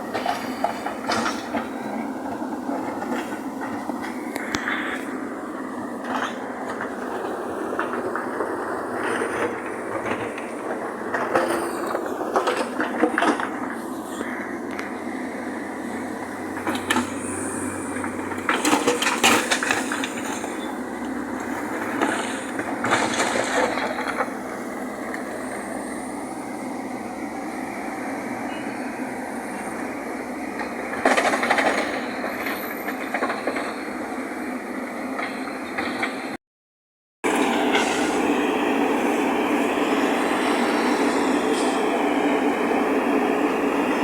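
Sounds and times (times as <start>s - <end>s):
loader diesel engine running: 0.0s - 36.4s, 37.2s - 44.0s.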